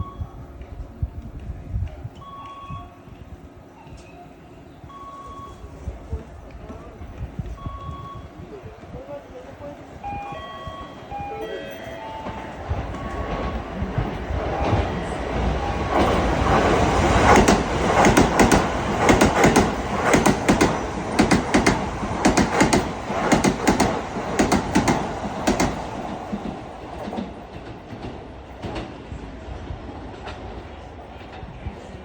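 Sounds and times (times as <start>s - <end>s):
train passing: 0.0s - 32.0s
wheels clacking over rail joints: 12.2s - 29.0s.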